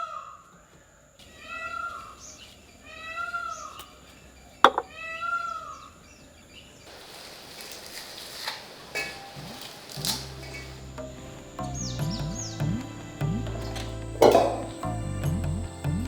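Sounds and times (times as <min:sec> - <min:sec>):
steady hiss: 0:06.9 - 0:16.0.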